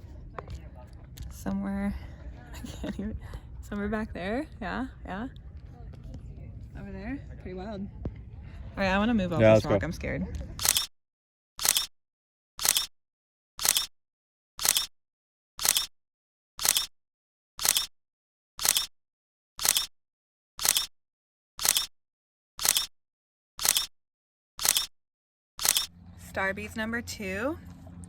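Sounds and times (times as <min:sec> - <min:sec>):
camera shutter clicks: 0:10.6 - 0:10.9, 0:11.6 - 0:11.9, 0:12.6 - 0:12.9, 0:13.6 - 0:13.9, 0:14.6 - 0:14.9, 0:15.6 - 0:15.9, 0:16.6 - 0:16.9, 0:17.6 - 0:17.9, 0:18.6 - 0:18.9, 0:19.6 - 0:19.9, 0:20.6 - 0:20.9, 0:21.6 - 0:21.9, 0:22.6 - 0:22.9, 0:23.6 - 0:23.9, 0:24.6 - 0:24.9, 0:25.6 - 0:25.9.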